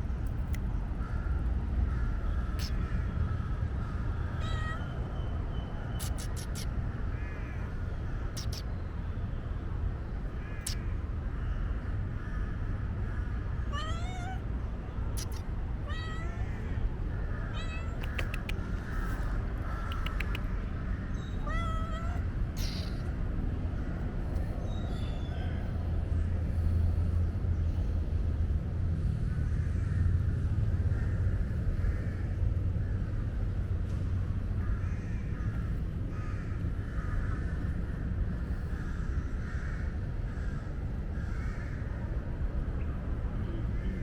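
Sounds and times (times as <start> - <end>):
steady low rumble: 0.0 - 44.0
cat meowing: 4.4 - 5.1, 13.6 - 14.4, 15.2 - 16.8, 17.4 - 18.6, 21.2 - 23.1.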